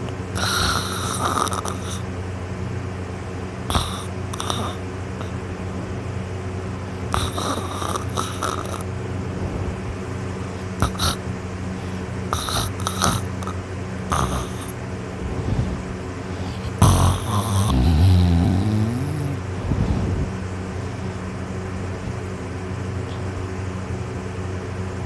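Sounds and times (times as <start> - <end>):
steady low hum: 0.0 - 25.0
person snoring: 0.4 - 2.0, 3.7 - 5.3, 7.1 - 9.8, 10.8 - 11.2, 11.8 - 20.4.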